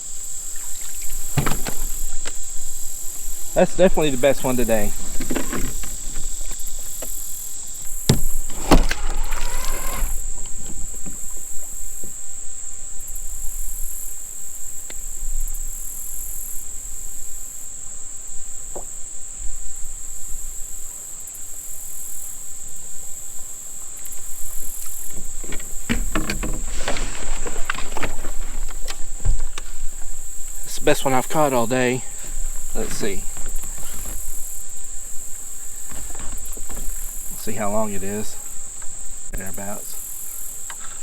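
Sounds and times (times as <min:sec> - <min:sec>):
insect chorus drone: 0:00.0 - 0:41.0
sharp knocks: 0:08.0 - 0:11.2, 0:25.4 - 0:29.7.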